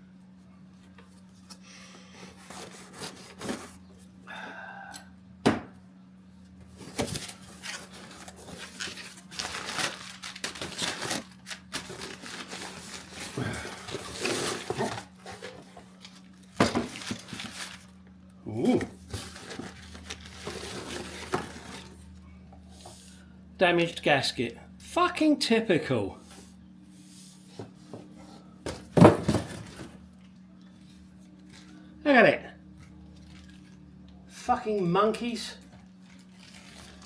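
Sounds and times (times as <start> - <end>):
packaging rustling and crinkling: 6.8 - 18.0, 19.0 - 22.2, 35.6 - 37.0.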